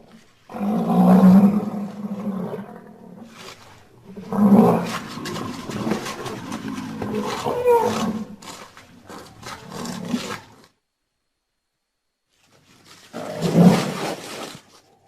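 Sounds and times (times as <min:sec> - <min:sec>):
rhinoceros calling: 0:04.1 - 0:10.4.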